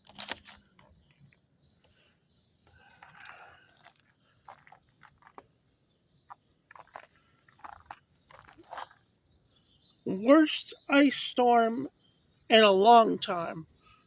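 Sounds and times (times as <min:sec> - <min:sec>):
ice cracking: 0:00.0 - 0:00.6, 0:03.0 - 0:05.6, 0:06.3 - 0:09.0.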